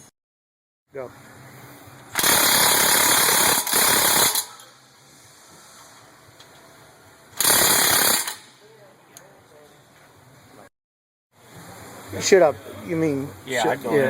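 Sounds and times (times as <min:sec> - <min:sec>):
pneumatic impact wrench rattling: 0:02.2 - 0:04.7, 0:07.4 - 0:08.5.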